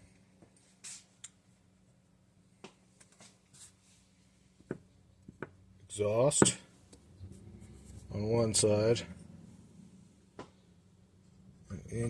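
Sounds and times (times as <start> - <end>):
faint room hum: 0.0 - 12.0.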